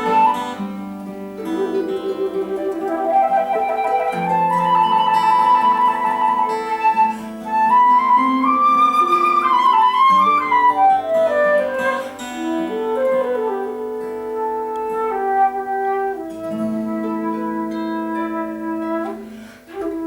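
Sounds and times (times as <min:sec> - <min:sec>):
harp accompaniment: 0:00.0 - 0:15.9
flute melody with trills: 0:00.0 - 0:20.0.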